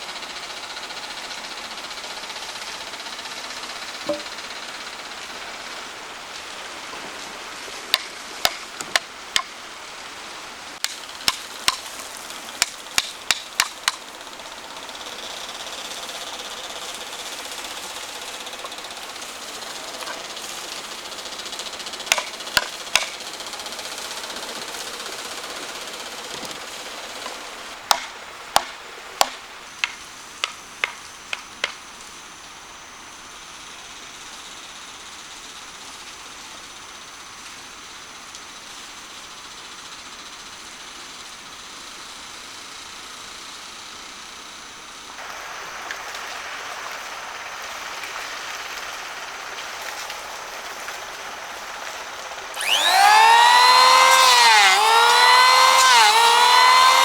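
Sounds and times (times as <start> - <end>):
steady hiss: 0.0 - 52.7
hand tool striking wood: 4.0 - 4.4, 7.9 - 9.5, 10.8 - 14.0, 22.1 - 23.3, 27.9 - 31.8, 52.6 - 57.0.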